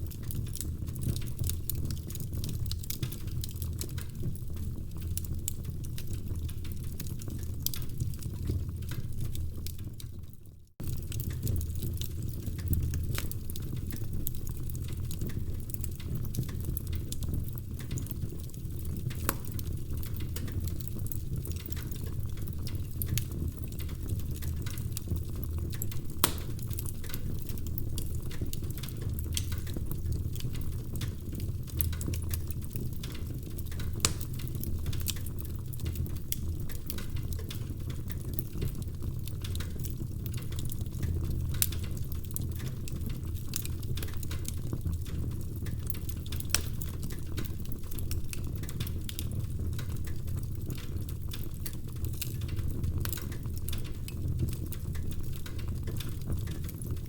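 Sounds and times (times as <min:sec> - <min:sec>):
wood fire crackling and popping: 0:00.0 - 0:57.0.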